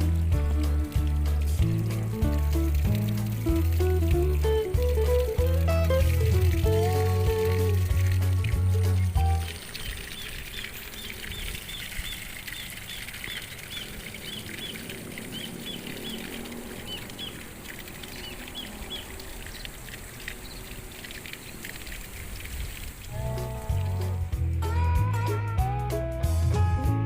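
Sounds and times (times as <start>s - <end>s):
guitar music: 0.0s - 9.6s, 23.2s - 27.0s.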